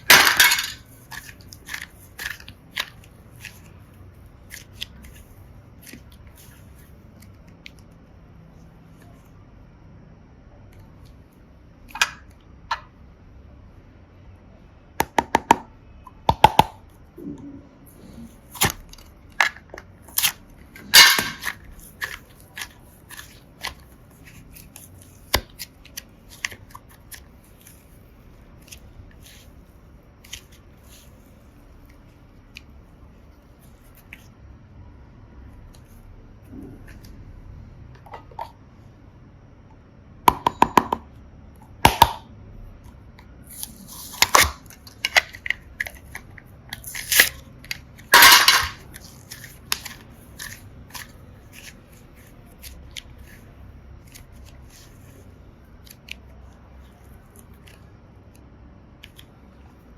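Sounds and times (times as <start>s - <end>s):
hands squishing slime: 18.0s - 34.4s.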